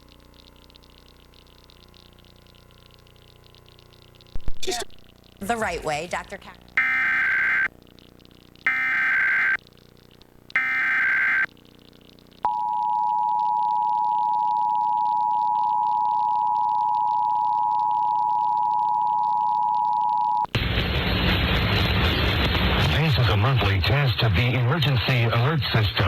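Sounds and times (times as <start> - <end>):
two-tone attention signal: 6.8 - 7.7, 8.7 - 9.6, 10.6 - 11.5, 12.5 - 20.5
digital data burst screech: 10.6 - 11.5.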